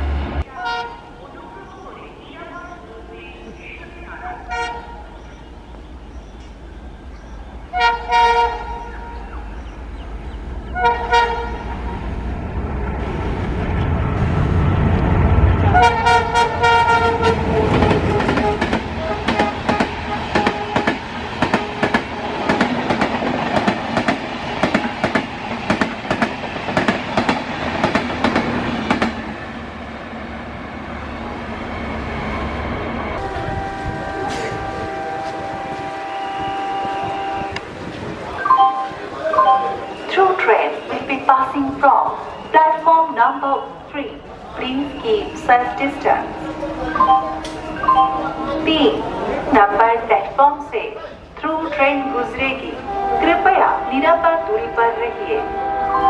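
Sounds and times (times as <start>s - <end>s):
locomotive horn blasts: 0.4s - 1.2s, 4.5s - 5.1s, 7.7s - 9.3s, 10.8s - 11.8s, 15.7s - 22.0s, 33.2s - 37.7s, 44.7s - 49.1s, 51.9s - 56.0s
train wheels clattering on rails: 17.0s - 29.3s.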